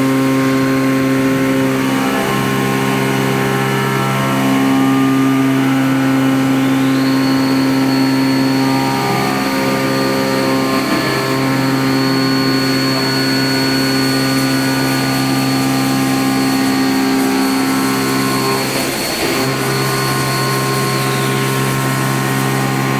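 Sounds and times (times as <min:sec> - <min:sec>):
machine whine: 0:00.0 - 0:22.9.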